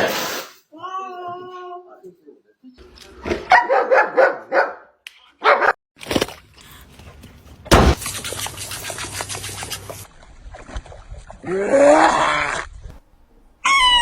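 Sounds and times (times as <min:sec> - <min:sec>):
dog barking: 0:03.5 - 0:05.8
loud sudden bang: 0:07.7 - 0:08.0.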